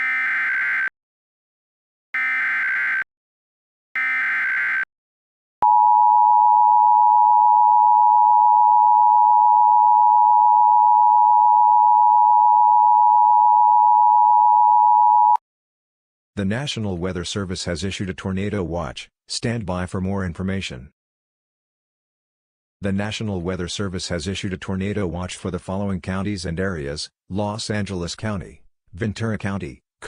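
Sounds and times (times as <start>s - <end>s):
loud steady attention tone: 2.2s - 3.1s, 4.0s - 4.9s.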